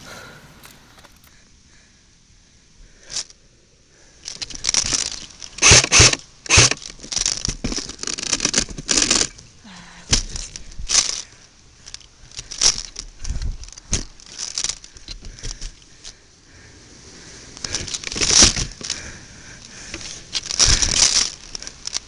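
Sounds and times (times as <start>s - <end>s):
footsteps crunching dry leaves: 4.4s - 15.9s, 16.8s - 22.0s.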